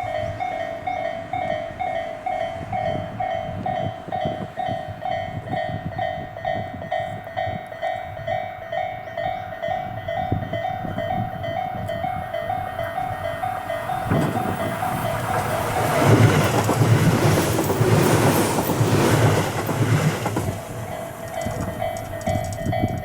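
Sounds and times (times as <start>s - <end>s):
level crossing warning bell ringing: 0.0s - 23.0s
train wheels clacking over rail joints: 11.8s - 23.0s.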